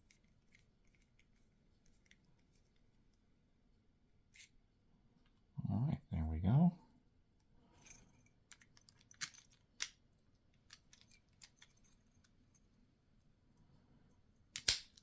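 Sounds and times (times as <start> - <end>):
padlock parts clicking: 14.6 - 15.0.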